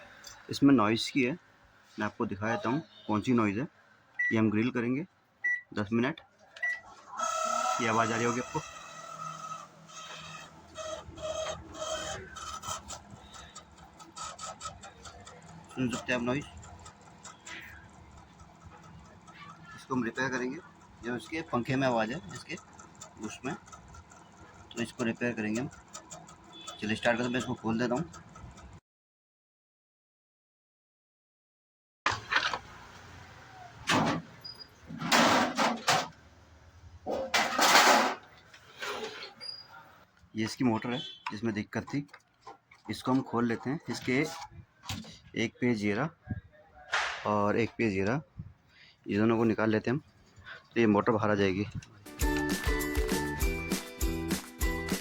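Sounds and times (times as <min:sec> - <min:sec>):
fan motor squealing and rasping: 0:07.1 - 0:28.6.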